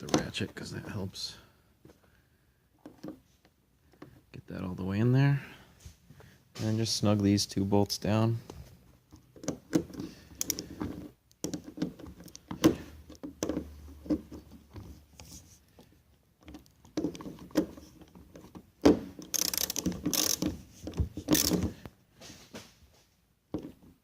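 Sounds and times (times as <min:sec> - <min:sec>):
metal clicks and knocks: 0:08.4 - 0:21.9
socket ratchet clicking: 0:09.1 - 0:12.5, 0:19.1 - 0:20.6, 0:21.2 - 0:21.7.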